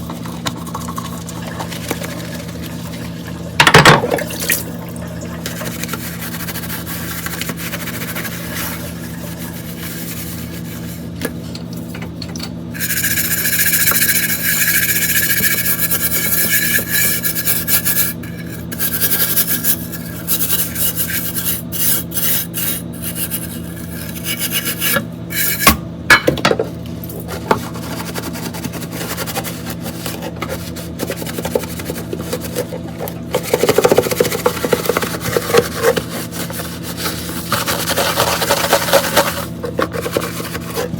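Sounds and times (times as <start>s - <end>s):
dishes being scrubbed: 5.4s - 11.2s, 12.8s - 26.3s, 27.2s - 40.9s
dishes clinking: 26.1s - 26.6s.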